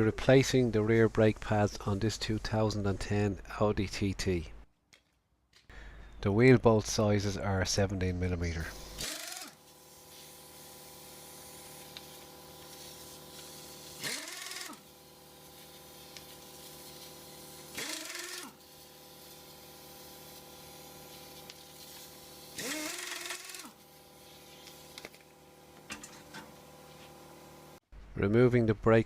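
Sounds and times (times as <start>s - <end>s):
power tool motor bursts: 8.8s - 25.1s.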